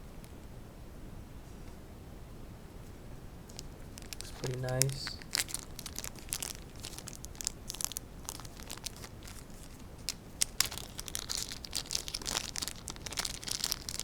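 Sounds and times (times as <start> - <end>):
packaging crinkling and rustling: 3.4 - 14.0.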